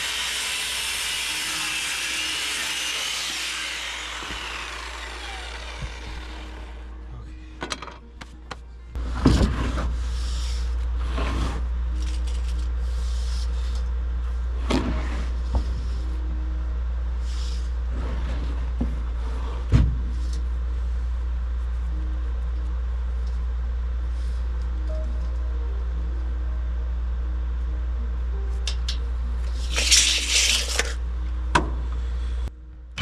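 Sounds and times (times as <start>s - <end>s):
low engine rumble: 3.5s - 29.7s.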